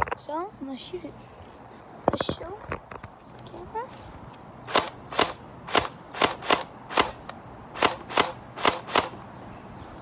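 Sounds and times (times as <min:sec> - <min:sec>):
airsoft gun shots: 0:04.7 - 0:09.2.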